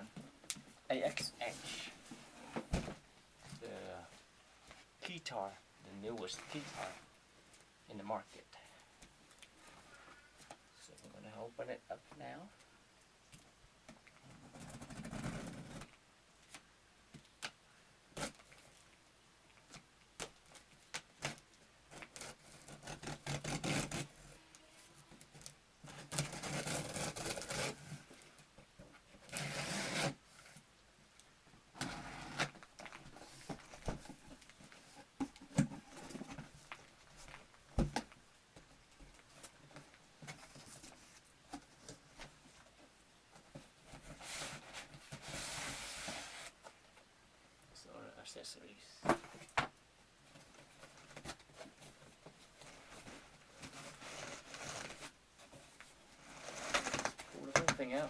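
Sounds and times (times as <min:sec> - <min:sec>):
cardboard rubbing and scraping: 0:06.3 - 0:07.1, 0:25.9 - 0:28.1, 0:29.3 - 0:30.6, 0:31.8 - 0:35.0, 0:43.8 - 0:46.7, 0:50.5 - 0:57.4.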